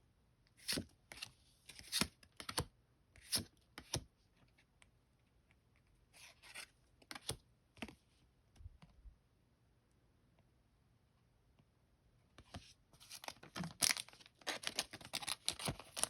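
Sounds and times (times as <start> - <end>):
trading cards sliding and flipping: 0.6 - 2.6, 6.2 - 8.0.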